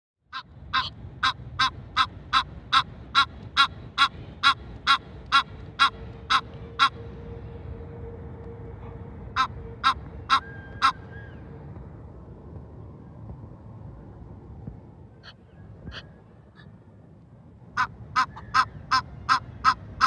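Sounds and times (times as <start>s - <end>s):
goose honking: 0.3s - 7.0s, 9.3s - 11.2s, 17.8s - 20.0s.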